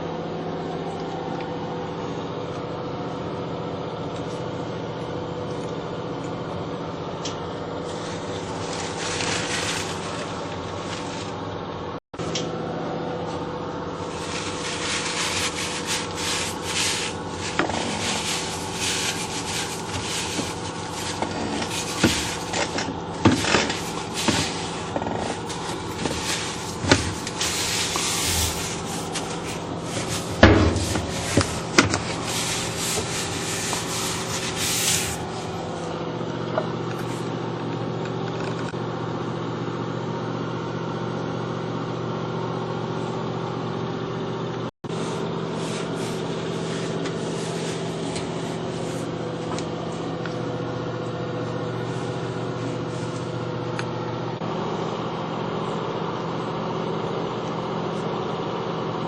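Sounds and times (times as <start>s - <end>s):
machine hum: 0.0s - 59.0s
scraping and rubbing strokes: 7.9s - 11.4s, 14.0s - 35.9s, 44.9s - 49.1s.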